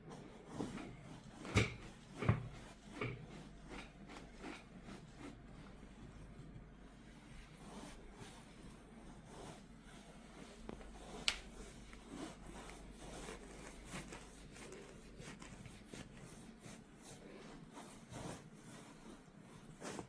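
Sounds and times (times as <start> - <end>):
fingers rubbing skin and hair: 7.3 - 20.0.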